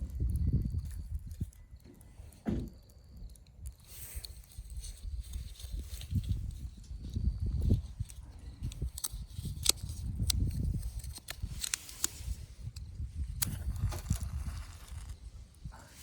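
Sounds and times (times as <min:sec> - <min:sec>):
campfire crackling: 0:00.0 - 0:16.0
sharp pops of fire: 0:08.8 - 0:16.0.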